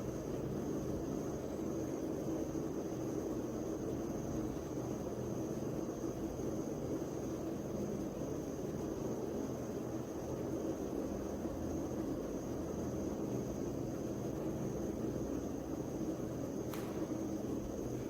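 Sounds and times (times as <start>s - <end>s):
background hum and hiss: 0.0s - 18.0s
click: 16.7s - 17.1s.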